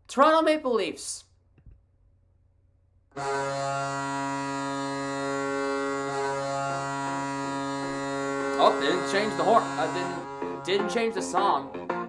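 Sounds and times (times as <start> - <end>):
goal horn blast: 3.2 - 11.8.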